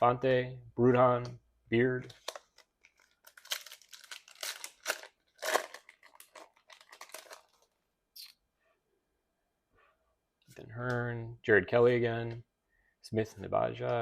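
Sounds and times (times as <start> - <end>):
plastic wrapper crinkling and tearing: 2.1 - 7.8.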